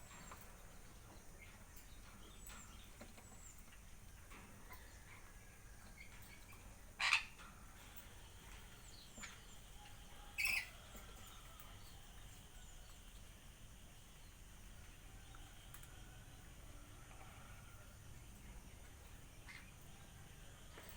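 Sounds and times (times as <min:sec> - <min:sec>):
faint bird chirping: 0:00.0 - 0:20.9
parrots squawking: 0:07.0 - 0:07.4, 0:10.4 - 0:10.7.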